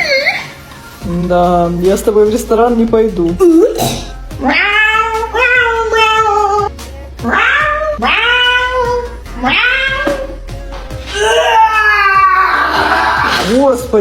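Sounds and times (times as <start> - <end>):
person making cat-like yowls: 11.1 - 13.5.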